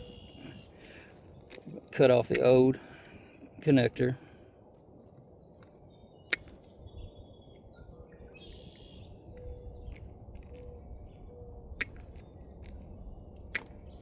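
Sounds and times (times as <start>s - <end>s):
birds chirping: 0.0s - 14.0s
side cutters snipping wire: 0.8s - 3.8s, 6.3s - 6.6s, 11.8s - 12.8s, 13.4s - 14.0s.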